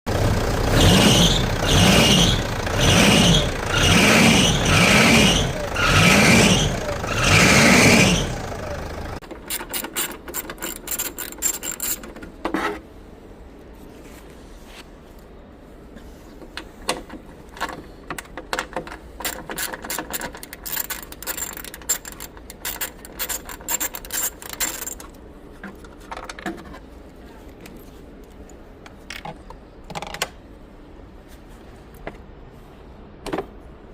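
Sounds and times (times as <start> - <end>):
engine belt squealing: 0.1 - 9.2
engine revving: 0.1 - 9.2.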